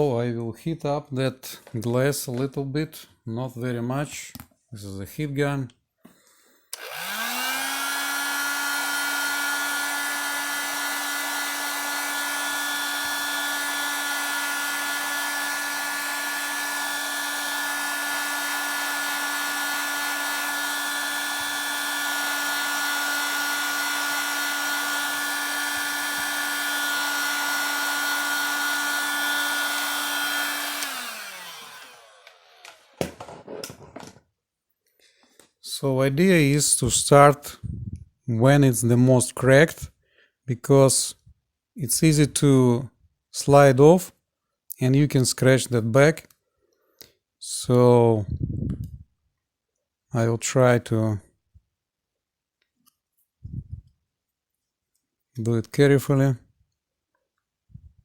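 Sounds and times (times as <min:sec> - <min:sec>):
heat gun fan humming: 0:06.8 - 0:33.3.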